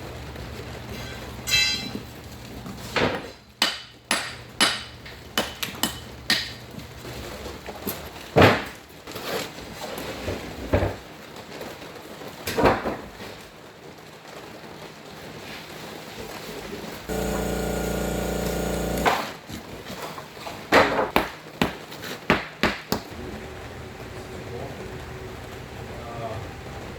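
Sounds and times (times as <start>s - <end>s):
low steady hum: 17.1s - 19.1s.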